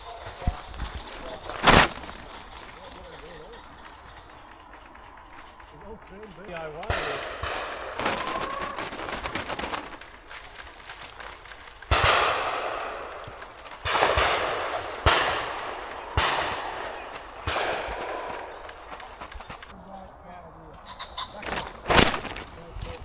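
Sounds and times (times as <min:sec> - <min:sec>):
shotgun firing with echo: 0:06.5 - 0:10.0, 0:11.9 - 0:19.7.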